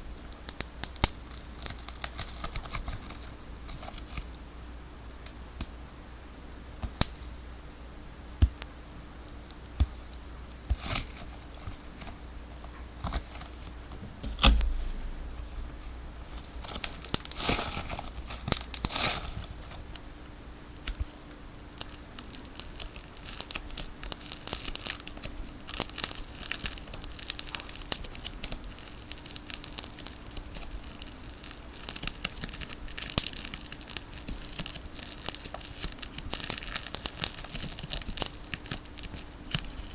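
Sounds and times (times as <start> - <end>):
crackly tape rustle: 0.4 - 4.4, 9.2 - 39.9
tape tearing and crinkling: 10.7 - 20.0, 21.8 - 39.9.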